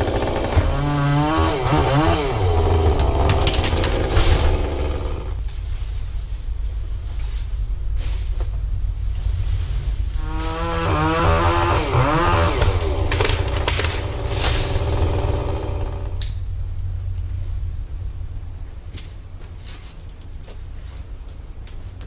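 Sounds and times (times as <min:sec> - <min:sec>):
chainsaw revving: 0:00.0 - 0:05.4, 0:10.2 - 0:16.2
steady low rumble: 0:00.0 - 0:22.0
sharp knocks or cracks: 0:03.0 - 0:05.2, 0:12.4 - 0:15.0.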